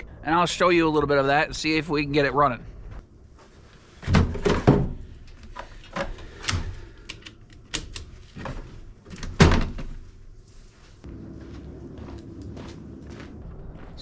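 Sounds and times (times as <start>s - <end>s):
knocks and clunks of handling: 4.0s - 10.0s.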